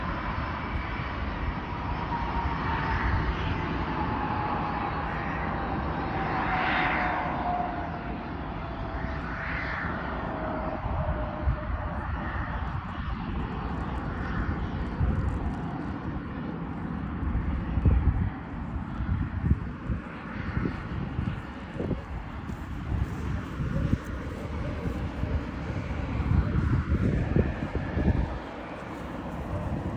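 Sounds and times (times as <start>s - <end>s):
jet engines whining: 0.2s - 29.9s
low rumbling bursts: 10.2s - 29.9s.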